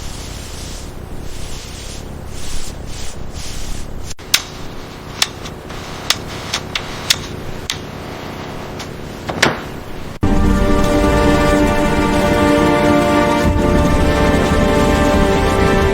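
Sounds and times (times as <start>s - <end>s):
steady hiss: 0.0s - 15.9s
music: 10.2s - 15.9s.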